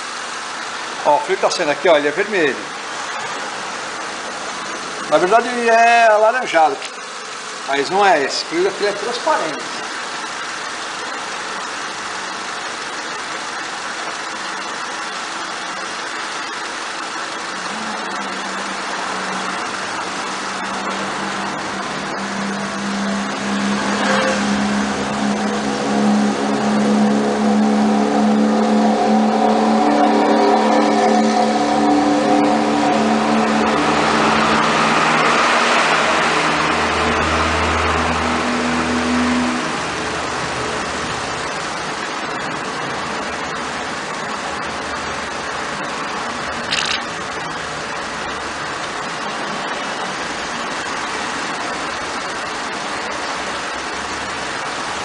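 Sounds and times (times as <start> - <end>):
car engine idling: 0.0 - 55.0
hiss: 0.0 - 55.0
low steady hum: 12.5 - 44.7.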